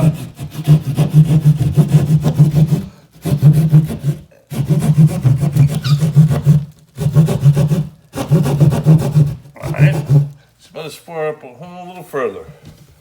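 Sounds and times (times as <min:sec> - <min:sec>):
hand saw cutting drywall: 0:00.0 - 0:10.4.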